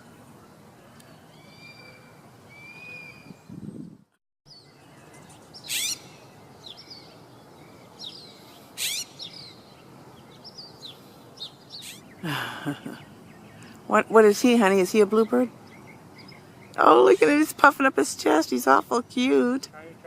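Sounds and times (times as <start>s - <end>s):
songbirds calling: 0.0s - 3.6s, 4.5s - 20.0s.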